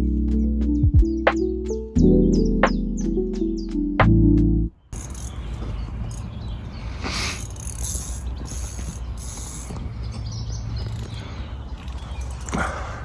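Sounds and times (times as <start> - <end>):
fishing reel clicking and whirring: 5.0 - 6.2, 7.3 - 9.8, 11.8 - 12.6.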